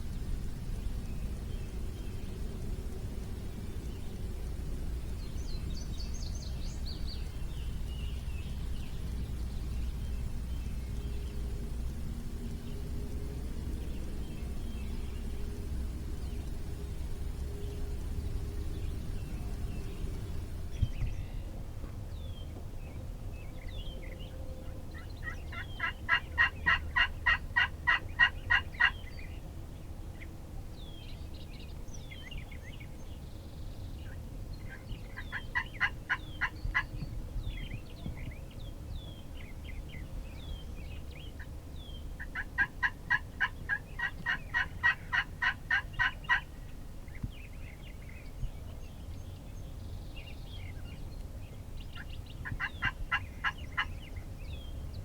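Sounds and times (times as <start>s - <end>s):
songbird chirps: 0.0s - 55.0s
turkey yelping: 42.2s - 46.4s.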